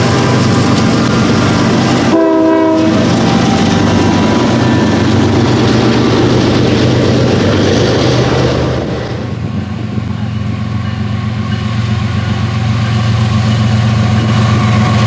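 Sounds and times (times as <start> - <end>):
train passing with rail noise: 0.0 - 15.0
locomotive air horn blast: 1.9 - 5.1.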